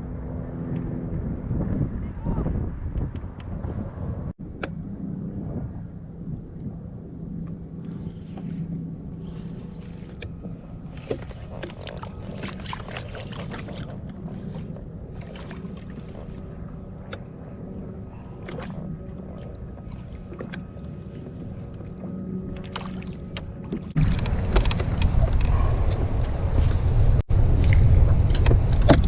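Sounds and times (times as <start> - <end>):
steady low hum: 2.6 - 29.0
water sloshing against hull: 7.4 - 29.0.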